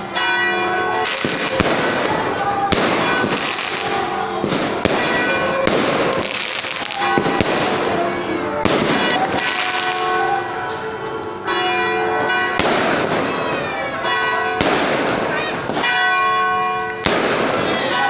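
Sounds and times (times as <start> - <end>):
fireworks bangs and crackling: 0.0 - 18.0
steady ringing tones: 0.0 - 18.0.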